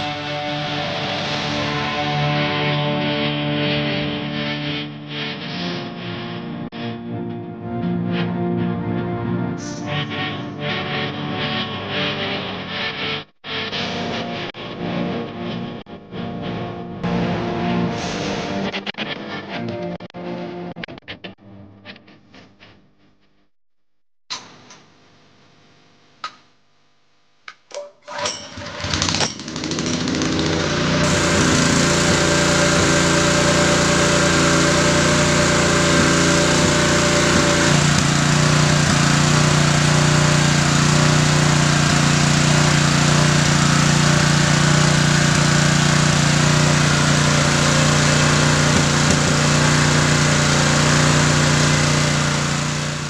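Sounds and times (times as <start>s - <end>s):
water pump engine running: 28.1s - 53.0s.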